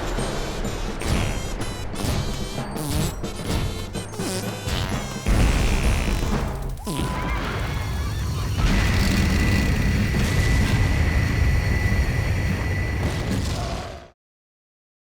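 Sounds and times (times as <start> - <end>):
cartoon rumble sound effect: 1.0 - 11.2.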